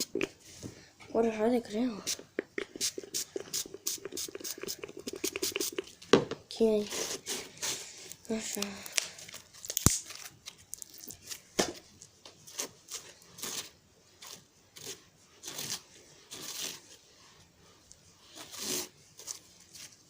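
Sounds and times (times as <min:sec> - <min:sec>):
slime tearing and crackling: 0:08.3 - 0:11.4.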